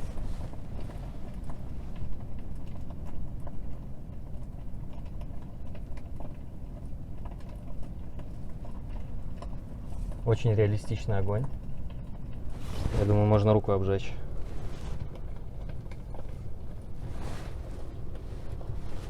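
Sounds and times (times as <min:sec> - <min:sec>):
air rushing from vents: 0:00.0 - 0:03.8, 0:08.5 - 0:19.0
fire crackling sound effect: 0:12.2 - 0:19.0.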